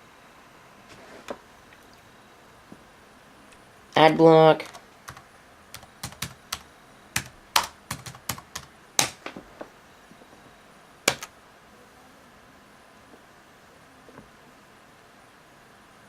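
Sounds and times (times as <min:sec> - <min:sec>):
laptop keyboard typing: 0:04.6 - 0:09.2, 0:11.1 - 0:11.3.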